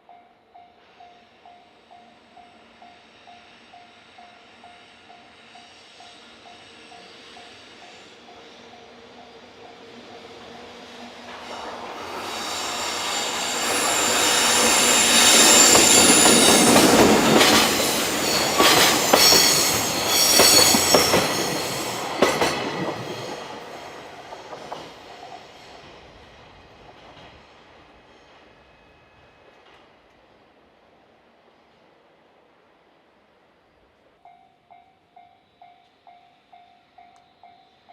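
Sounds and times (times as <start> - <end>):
freight train rumble: 0.0 - 37.9
high-pitched wheel squeal: 10.2 - 21.8
wheels clacking over rail joints: 10.2 - 25.6.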